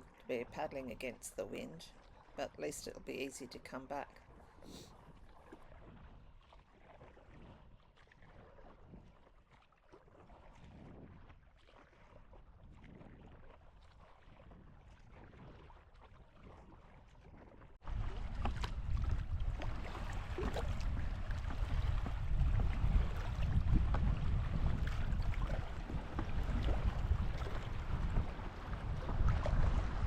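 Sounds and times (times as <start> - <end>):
water against hull: 0.0 - 30.0
paddle splashing water: 1.8 - 30.0
wind buffeting microphone: 17.8 - 30.0.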